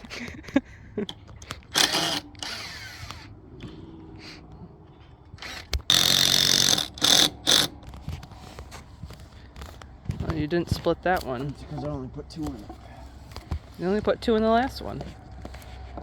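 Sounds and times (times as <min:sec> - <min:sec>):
power drill driving screws: 0:01.7 - 0:03.3, 0:05.4 - 0:07.8.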